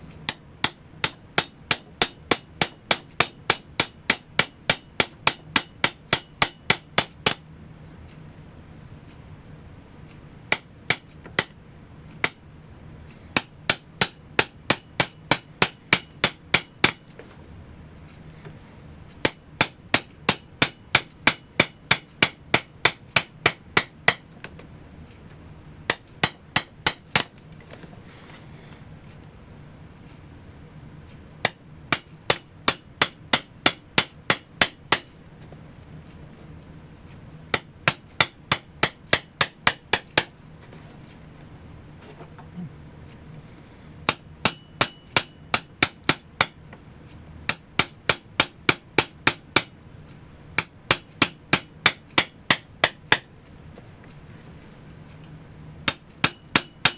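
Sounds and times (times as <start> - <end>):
hammer tapping nails: 0.2 - 7.4, 10.5 - 11.6, 13.3 - 17.1, 19.2 - 24.6, 25.9 - 27.3, 31.4 - 35.1, 37.5 - 40.4, 44.1 - 46.6, 47.5 - 49.7, 50.6 - 53.3, 55.8 - 56.9.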